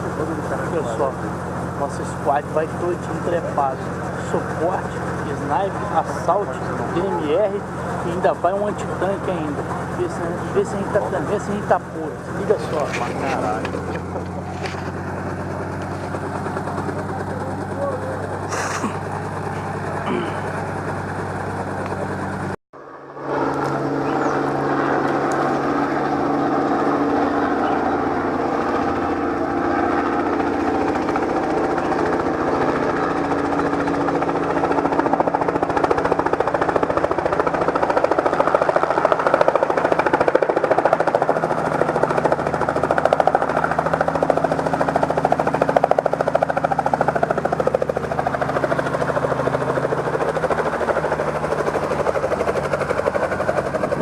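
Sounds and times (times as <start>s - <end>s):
helicopter engine and rotor chop: 0.0s - 54.0s.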